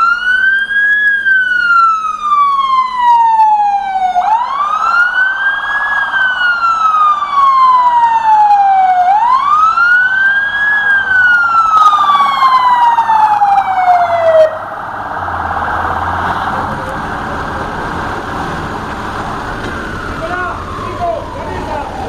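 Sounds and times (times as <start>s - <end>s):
engine and road rumble: 0.0s - 22.0s
fire engine siren wailing: 0.0s - 22.0s.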